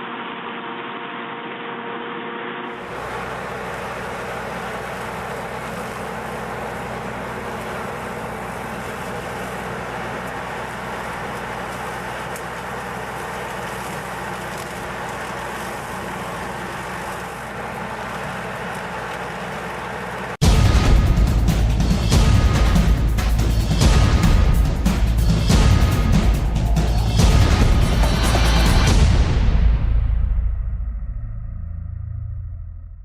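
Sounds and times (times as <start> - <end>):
skid steer engine running: 0.0 - 29.8
hydraulic brush cutter: 2.7 - 20.4.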